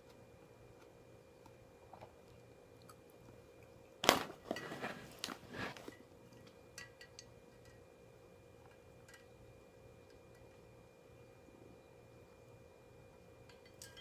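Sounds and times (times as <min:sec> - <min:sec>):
person chewing food with crunching: 0:00.0 - 0:03.9.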